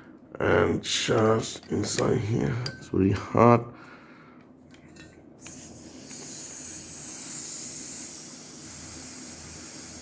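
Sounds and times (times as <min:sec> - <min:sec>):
gas hissing steadily: 0:05.4 - 0:10.0.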